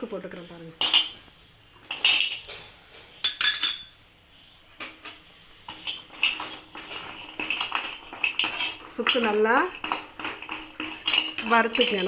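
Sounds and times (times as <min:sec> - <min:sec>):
ginger and spoon clinking in pan: 0:05.7 - 0:12.0.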